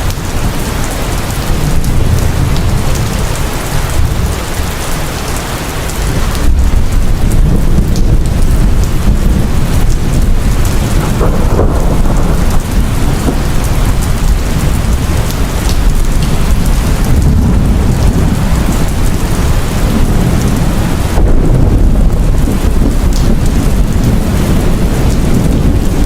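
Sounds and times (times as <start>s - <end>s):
deep rumble of thunder: 0.0s - 26.0s
heavy rain falling: 0.0s - 26.0s.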